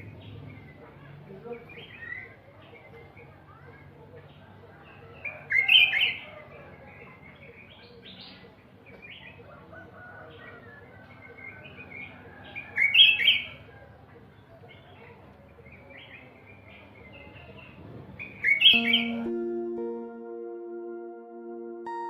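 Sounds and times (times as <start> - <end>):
songbirds chirping and singing: 10.3 - 19.2.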